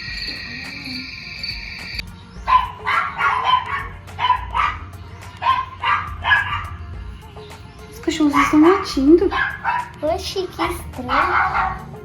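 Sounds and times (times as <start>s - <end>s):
dogs barking: 2.4s - 6.8s, 8.1s - 12.0s.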